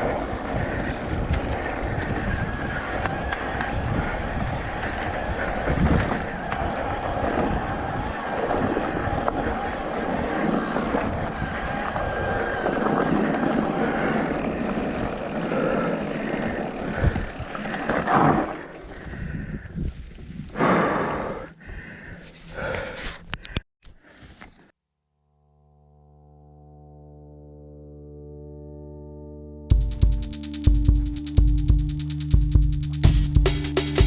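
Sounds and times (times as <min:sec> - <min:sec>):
wind and motion rush: 0:00.0 - 0:20.6
soft music: 0:26.7 - 0:34.0.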